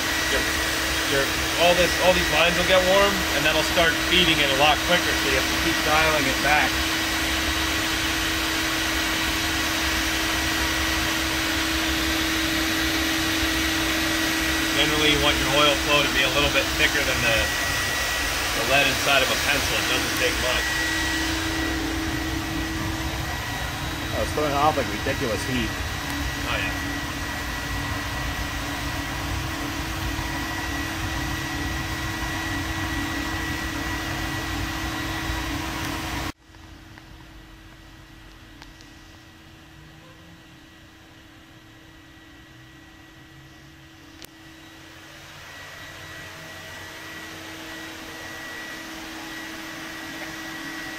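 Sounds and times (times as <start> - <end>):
constant hum: 0.0 - 50.7
furnace roaring: 0.0 - 50.9
high whine: 0.0 - 50.9
low hum: 11.1 - 36.3
furnace rushing noise: 12.4 - 35.8.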